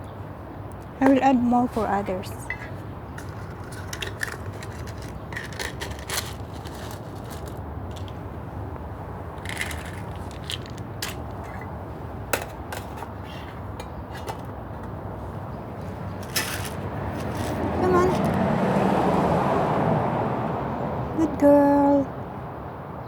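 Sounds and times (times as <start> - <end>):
dry kibble clicking and crunching: 3.2 - 11.7, 15.8 - 18.4.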